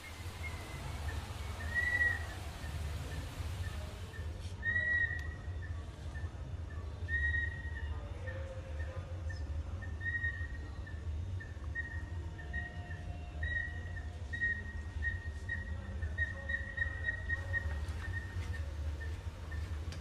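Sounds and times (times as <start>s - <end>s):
fainter lower tones: 0.0s - 4.4s
steady low hum: 0.0s - 4.6s, 8.6s - 20.0s
high pulsing whistling tone: 0.0s - 5.4s, 11.4s - 19.8s.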